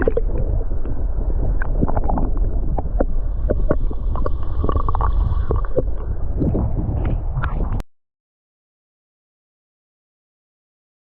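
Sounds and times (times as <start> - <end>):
wind buffeting microphone: 0.0 - 7.8.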